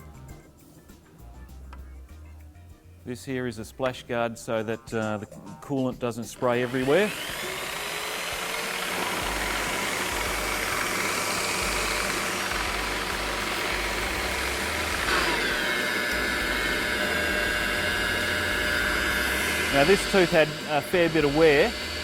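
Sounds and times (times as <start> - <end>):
grinder humming with thin whine: 6.4 - 22.0.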